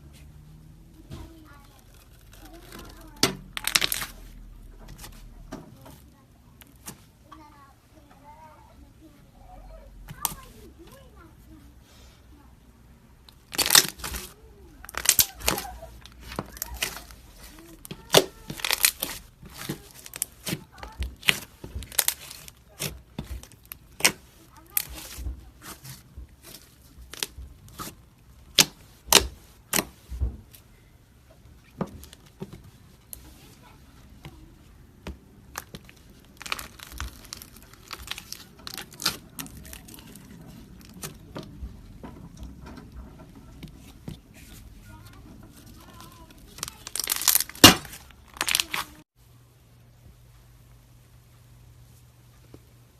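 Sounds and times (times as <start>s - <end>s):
slime squishing and crackling: 1.0s - 7.0s, 13.3s - 30.1s, 31.6s - 49.1s
small popping sounds: 13.3s - 27.9s, 35.0s - 43.0s, 45.7s - 49.0s.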